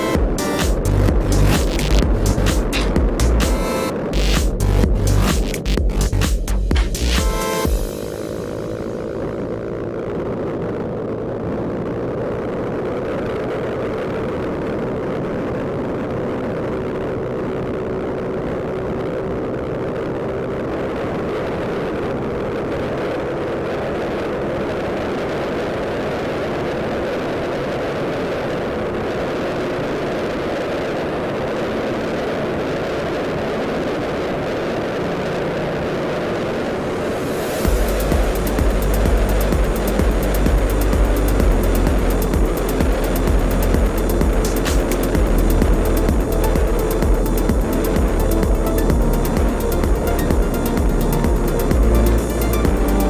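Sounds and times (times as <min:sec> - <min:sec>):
wind noise on microphone: 0:00.0 - 0:53.0
motor scooter engine running: 0:06.6 - 0:11.3, 0:37.6 - 0:53.0.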